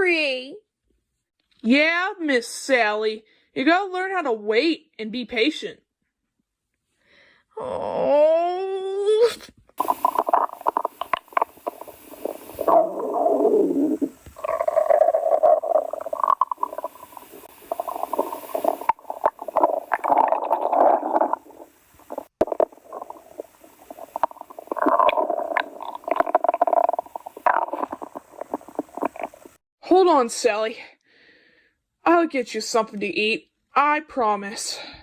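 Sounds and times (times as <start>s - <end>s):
stomach growling: 9.2s - 29.6s.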